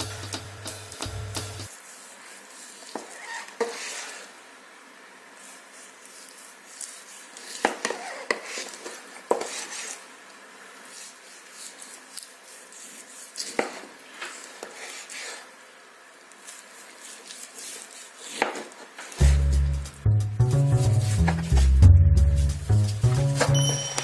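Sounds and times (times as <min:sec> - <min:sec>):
utensils knocking and scraping cookware: 0:22.4 - 0:24.0.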